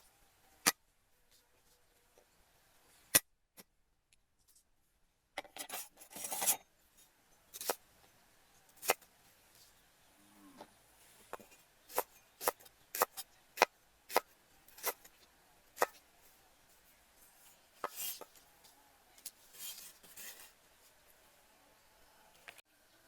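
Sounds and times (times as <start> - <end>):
knife chopping on cutting board: 15.8 - 16.0
rough scraping: 17.2 - 18.5, 19.3 - 21.0.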